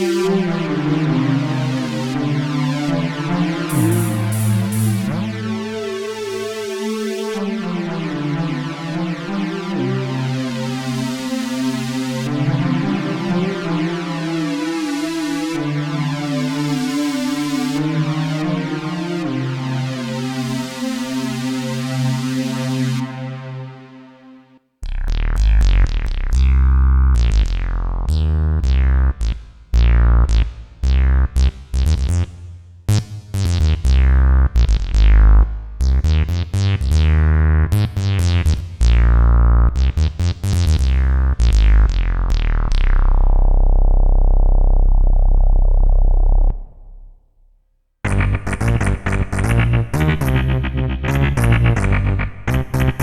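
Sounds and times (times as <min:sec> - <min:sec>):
synthesizer bass riff: 0:00.0 - 0:09.0, 0:24.8 - 0:47.2, 0:48.0 - 0:53.0.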